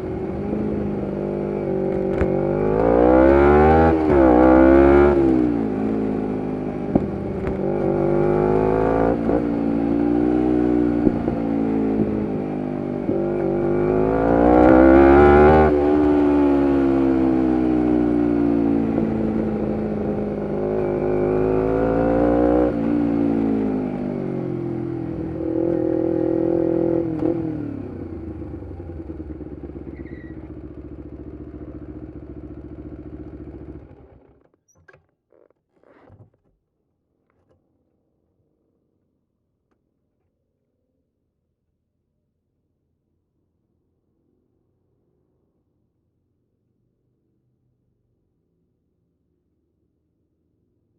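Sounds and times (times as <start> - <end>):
motorcycle engine revving: 0.0 - 34.5.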